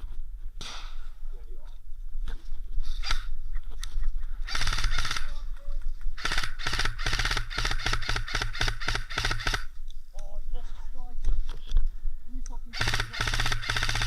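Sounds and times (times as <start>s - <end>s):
airsoft rifle rapid fire: 4.5s - 5.3s, 6.2s - 9.7s, 12.8s - 14.0s.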